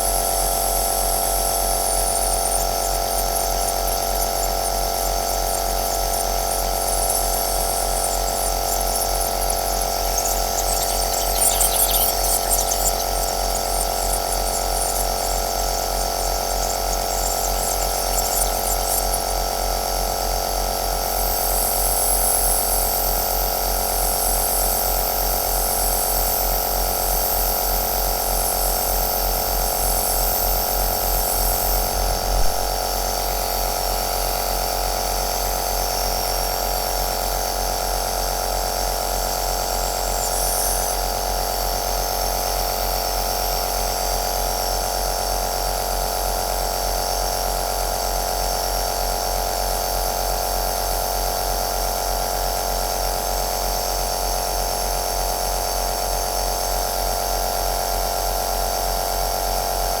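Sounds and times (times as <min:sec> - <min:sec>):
nebulizer motor hum and hiss: 0:00.0 - 0:32.7.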